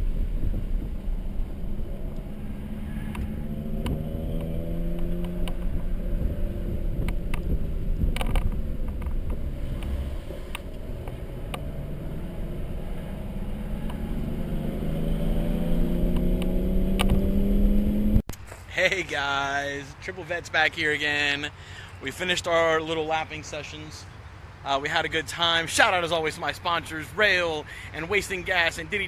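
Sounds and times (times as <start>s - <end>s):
car engine under load: 0.0s - 18.3s
road noise: 0.0s - 29.0s
sharp clicks: 7.0s - 11.7s, 16.1s - 17.2s.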